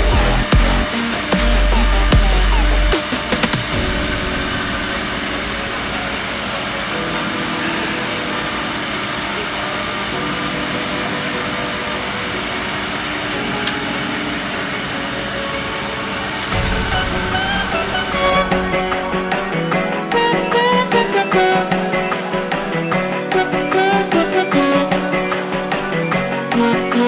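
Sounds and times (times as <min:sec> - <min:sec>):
machine motors whirring: 0:00.0 - 0:27.0
wood cutting noise: 0:00.0 - 0:27.0.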